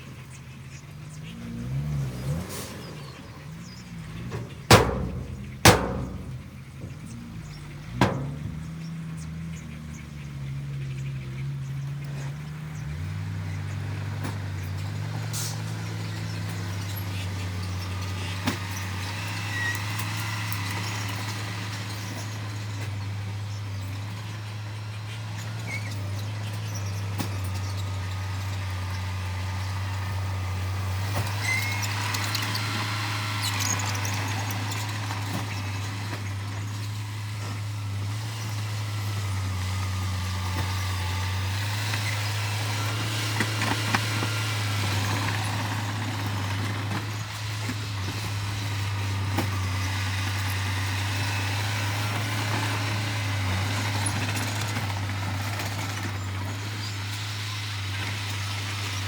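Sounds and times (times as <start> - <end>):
diesel engine of heavy machinery: 0.0 - 59.0
loud bangs: 4.1 - 8.8.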